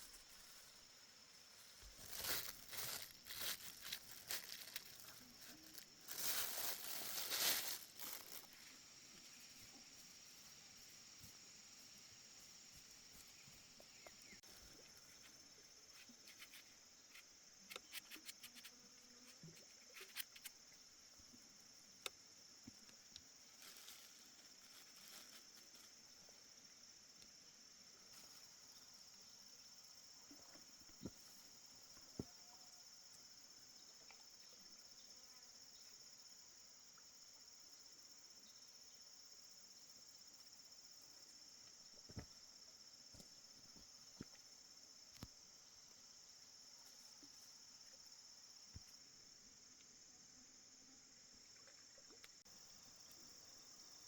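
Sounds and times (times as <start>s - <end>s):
rustling and crinkling: 0.0s - 10.0s, 23.4s - 26.3s
insects trilling: 0.0s - 54.0s.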